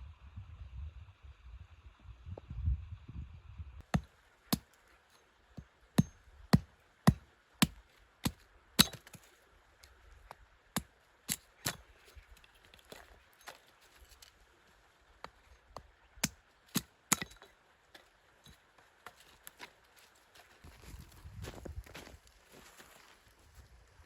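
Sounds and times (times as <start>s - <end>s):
axe chopping wood: 3.8s - 4.7s, 6.0s - 9.2s.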